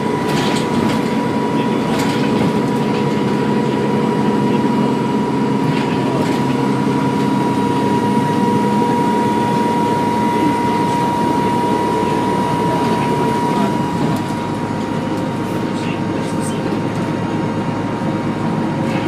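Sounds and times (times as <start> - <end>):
bus engine running: 0.0 - 19.0
high turbo whine: 0.0 - 19.0.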